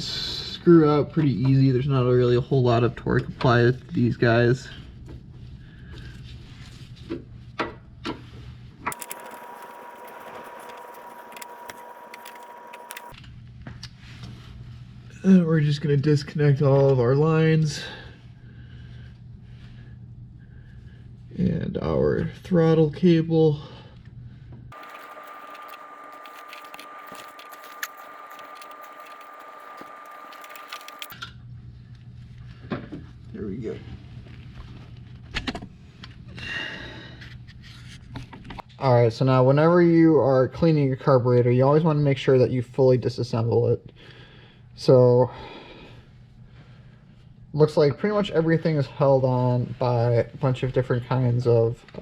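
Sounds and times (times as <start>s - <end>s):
high-pitched whine and hiss: 8.9s - 13.1s, 24.8s - 31.1s
screwdriver clicks: 8.9s - 13.1s, 24.8s - 31.1s
steady low hum: 8.9s - 13.1s, 24.8s - 31.1s.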